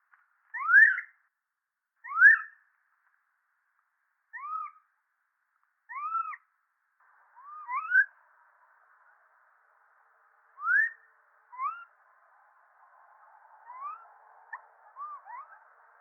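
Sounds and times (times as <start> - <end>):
monkey whistle-like calls: 7.4 - 8.1, 10.6 - 11.9, 15.0 - 15.6.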